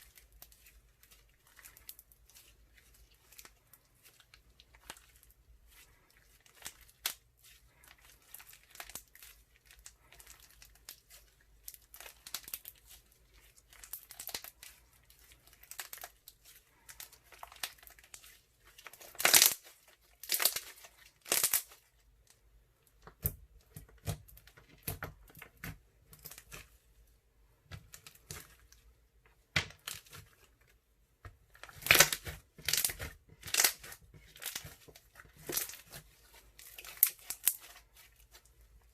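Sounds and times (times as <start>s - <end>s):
slime crackling and popping: 0.0s - 21.9s, 31.4s - 38.6s.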